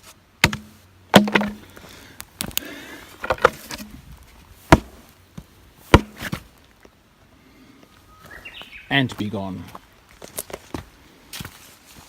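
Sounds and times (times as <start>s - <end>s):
wooden box knocking: 0.4s - 1.6s, 3.2s - 3.9s.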